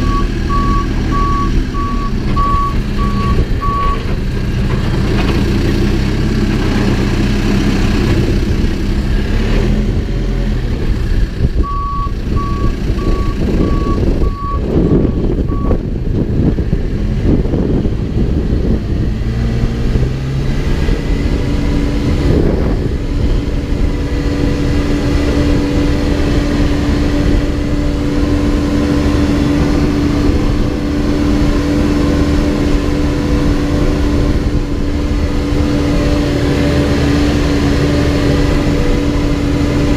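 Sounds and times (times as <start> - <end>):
reversing alarm beeping: 0.0 - 4.0, 11.6 - 15.8
backhoe diesel engine running: 0.0 - 39.9.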